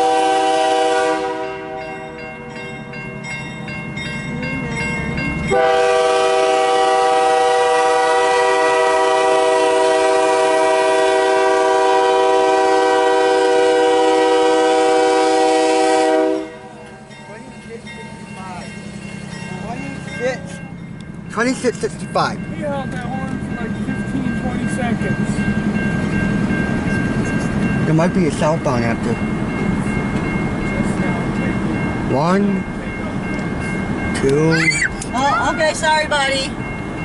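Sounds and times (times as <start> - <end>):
locomotive air horn: 0.0 - 1.9, 5.5 - 16.8
train rumble: 0.0 - 37.0.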